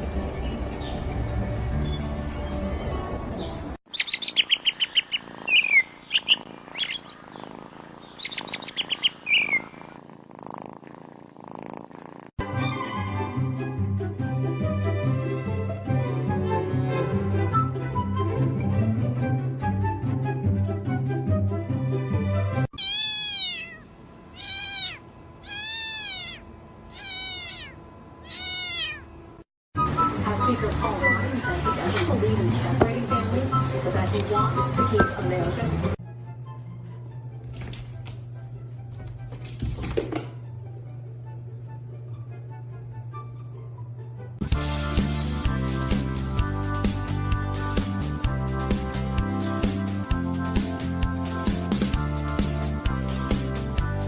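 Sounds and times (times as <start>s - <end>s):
music: 0.0s - 3.8s, 12.4s - 22.7s, 29.8s - 54.0s
songbird singing: 0.3s - 9.8s
cat meowing: 22.7s - 29.2s.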